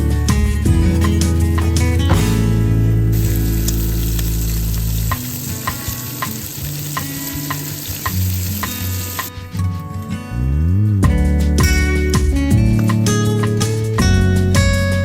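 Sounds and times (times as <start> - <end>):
background music: 0.0 - 15.0
food sizzling: 0.4 - 9.6.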